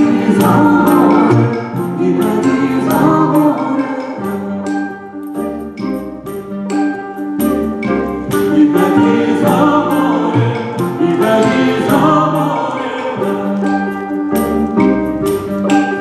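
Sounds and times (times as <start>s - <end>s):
choir singing: 0.0s - 5.2s, 8.3s - 14.2s
symphony orchestra: 0.0s - 16.0s.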